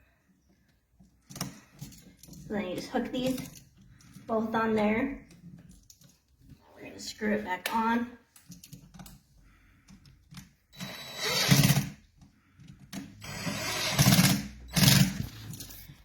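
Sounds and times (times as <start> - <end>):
screwdriver tightening screws: 10.3 - 12.0, 12.9 - 15.8.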